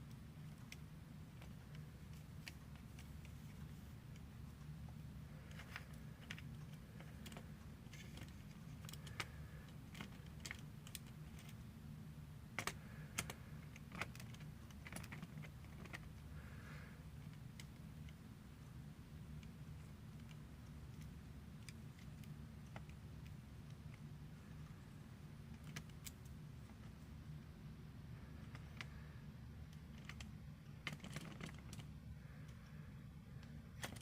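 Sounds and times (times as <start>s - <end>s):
steady low hum: 0.0s - 34.0s
plastic lego parts clicking: 5.4s - 11.6s, 12.5s - 16.2s, 19.3s - 24.0s, 25.5s - 26.9s, 29.7s - 31.9s, 33.4s - 34.0s.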